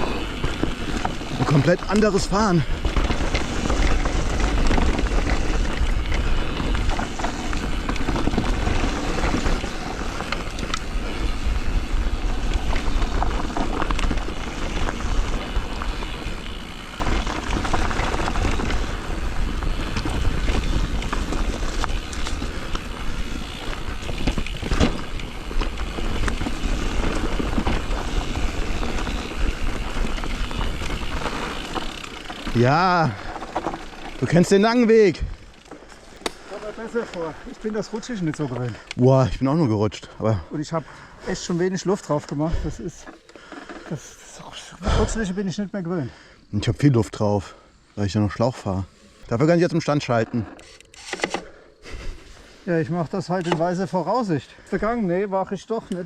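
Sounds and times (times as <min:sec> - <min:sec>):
bike knocking and rattling: 0:00.0 - 0:38.9, 0:53.2 - 0:55.0
bike tyres hissing over dirt: 0:00.0 - 0:56.0.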